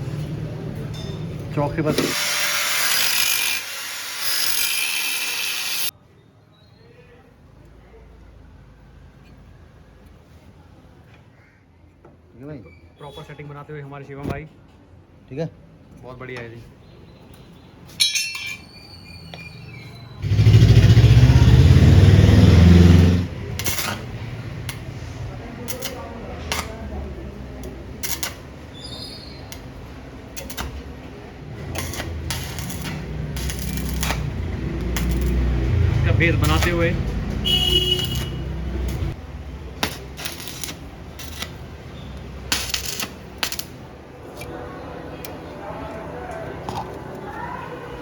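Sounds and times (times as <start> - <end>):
arc welding buzzing hiss: 2.0 - 5.9, 31.8 - 34.3, 39.8 - 41.6, 42.5 - 43.7
sharp metallic clicks and clinks: 18.0 - 18.8, 31.7 - 35.5.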